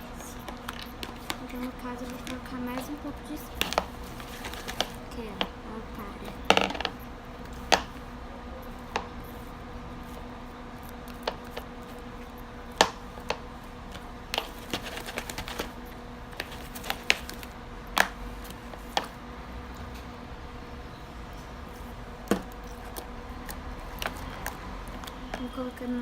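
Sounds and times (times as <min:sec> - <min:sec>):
slime being stirred: 0:00.2 - 0:05.5, 0:08.7 - 0:17.5, 0:21.7 - 0:25.8.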